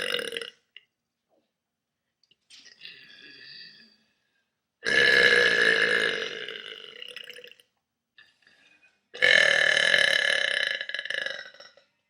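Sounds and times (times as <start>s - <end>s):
person burping loudly: 0.0s - 0.6s, 4.8s - 7.6s, 9.2s - 11.8s.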